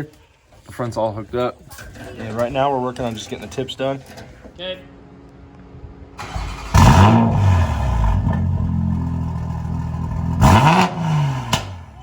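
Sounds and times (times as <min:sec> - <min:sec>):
car engine revving and idling: 0:06.4 - 0:12.0.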